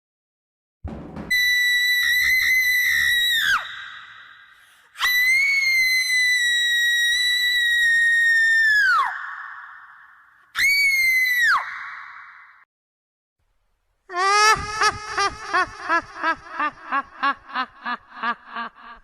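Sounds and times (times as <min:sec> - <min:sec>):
shrill high-pitched screams: 0:01.3 - 0:12.6.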